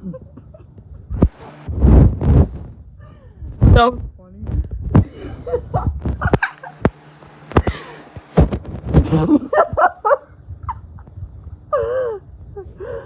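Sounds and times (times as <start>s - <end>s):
breathy hiss: 7.6s - 8.2s.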